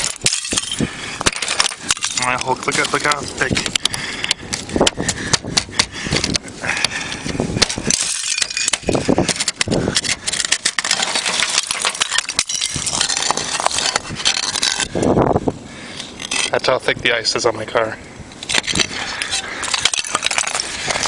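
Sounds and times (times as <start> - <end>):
ice scraping: 0.0 - 3.8, 7.4 - 17.4, 18.4 - 21.0
ice cracking and clinking: 0.0 - 5.2, 7.6 - 15.1, 15.9 - 16.7, 18.4 - 21.0.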